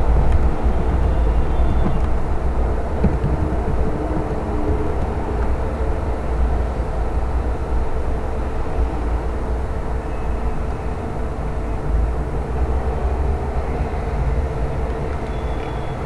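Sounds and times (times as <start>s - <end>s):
low rumbling: 0.0s - 7.2s.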